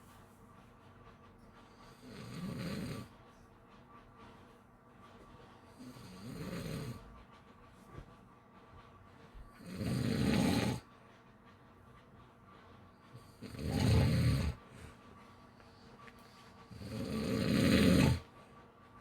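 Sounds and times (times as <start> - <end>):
rattling snores: 1.8 - 3.1, 5.8 - 7.1, 9.6 - 10.9, 13.2 - 14.6, 16.7 - 18.3.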